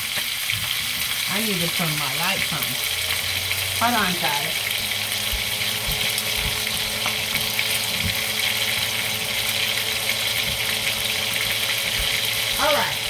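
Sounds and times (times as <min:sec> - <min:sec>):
food sizzling in hot oil: 0:00.0 - 0:13.0.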